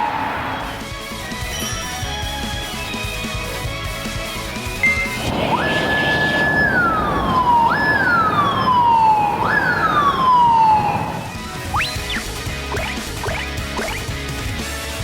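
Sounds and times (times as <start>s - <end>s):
low vehicle noise: 0.0s - 1.0s
police siren wailing: 5.2s - 14.1s.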